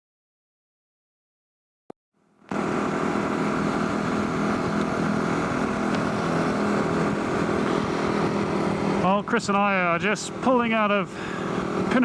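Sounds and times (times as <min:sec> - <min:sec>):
motorcycle engine running: 0:02.4 - 0:12.0
rush of noise: 0:02.5 - 0:12.0.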